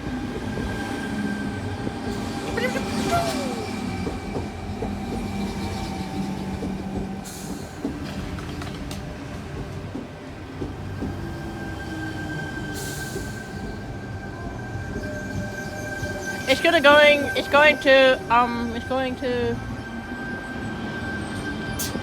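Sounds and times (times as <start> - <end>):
train cars rumbling: 0.0 - 22.0
train wheels squealing: 0.5 - 8.6, 10.8 - 22.0.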